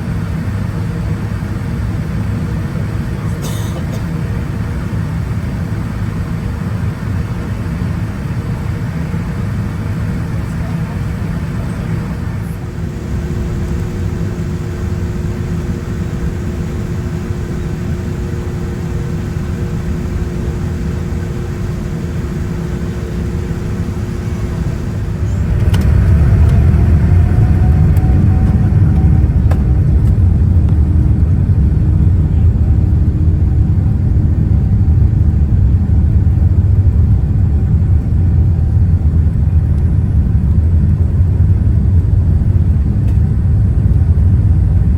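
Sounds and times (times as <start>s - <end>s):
aircraft cabin engine hum: 0.0s - 44.9s
jet engines spooling up: 9.4s - 35.4s.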